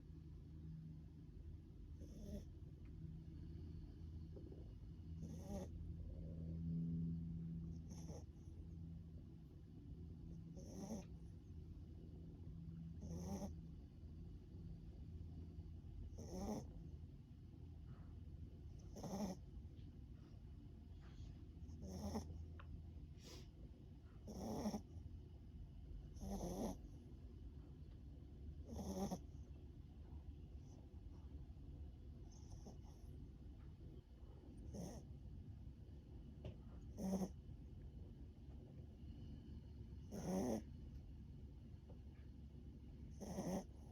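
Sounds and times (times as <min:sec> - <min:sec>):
dog snoring softly: 0:01.2 - 0:41.2, 0:41.8 - 0:43.9
dog snoring: 0:01.8 - 0:02.7, 0:04.2 - 0:08.8, 0:10.2 - 0:11.5, 0:12.8 - 0:14.0, 0:16.0 - 0:17.0, 0:18.6 - 0:19.6, 0:21.1 - 0:23.4, 0:24.1 - 0:25.1, 0:26.0 - 0:27.0, 0:28.6 - 0:29.6, 0:32.2 - 0:33.2, 0:34.4 - 0:35.2, 0:36.4 - 0:37.7, 0:39.2 - 0:41.0, 0:43.0 - 0:43.9.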